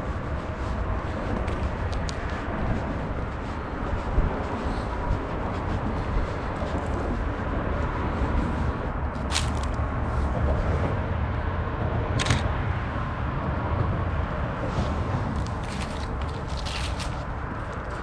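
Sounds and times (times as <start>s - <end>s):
steady low rumble: 0.0s - 18.0s
camera shutter clack: 12.2s - 12.5s.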